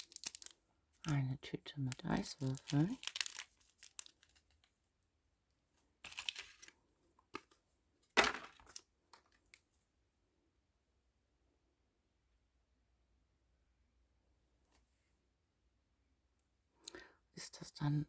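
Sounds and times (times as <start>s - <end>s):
ice cubes clicking: 0.0s - 0.6s, 1.9s - 4.5s
plastic bag crinkling: 0.0s - 1.2s, 1.9s - 4.7s, 6.0s - 6.7s, 8.2s - 8.8s.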